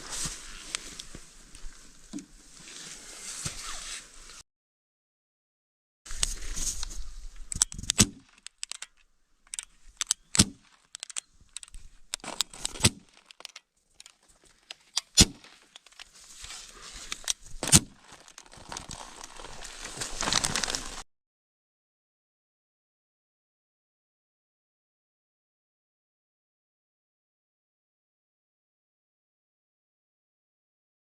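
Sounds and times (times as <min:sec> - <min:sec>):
sharp plastic cracks: 0:07.5 - 0:16.1, 0:17.2 - 0:21.0
plastic bottle crinkling: 0:07.8 - 0:21.0.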